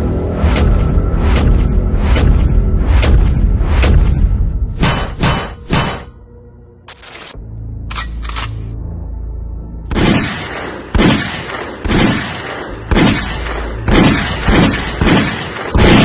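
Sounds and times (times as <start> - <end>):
deep bass line music: 0.0 - 16.0
gunshot and explosion effects: 0.4 - 6.2, 9.9 - 16.0.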